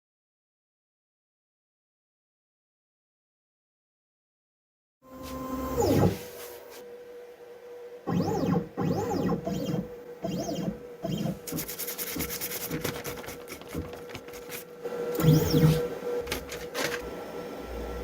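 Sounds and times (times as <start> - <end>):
stepper motors whining: 8.0 - 18.0.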